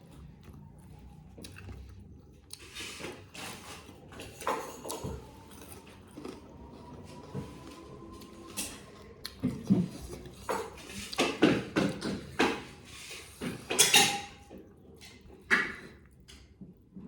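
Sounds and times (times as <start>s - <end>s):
cutlery clinking on a plate: 3.0s - 5.6s, 10.4s - 15.9s.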